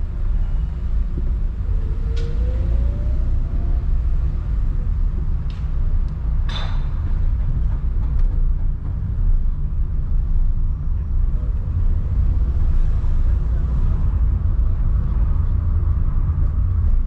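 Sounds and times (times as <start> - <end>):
car engine and road noise: 0.0 - 17.0.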